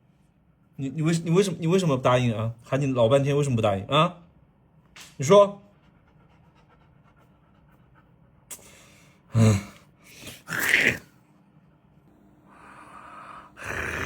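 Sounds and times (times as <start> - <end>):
low grunt: 9.3 - 9.8.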